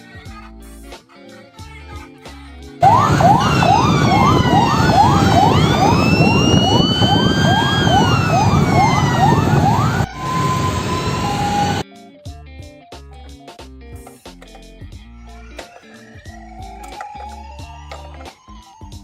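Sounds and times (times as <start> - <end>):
emergency vehicle sirens: 2.8 - 11.8, 15.4 - 19.0.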